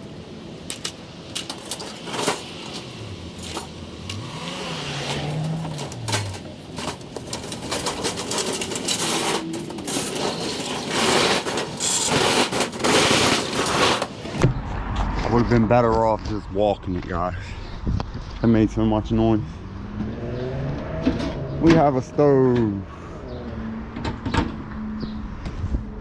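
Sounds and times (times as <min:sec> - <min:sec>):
metal stove rattling on wheels: 0:05.7 - 0:14.2.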